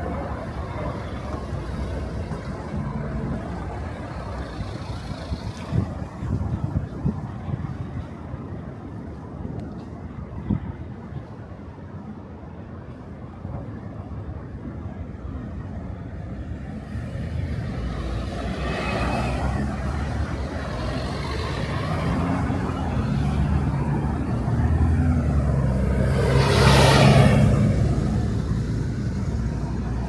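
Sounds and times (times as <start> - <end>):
vehicle engine passing by: 20.8 - 30.0.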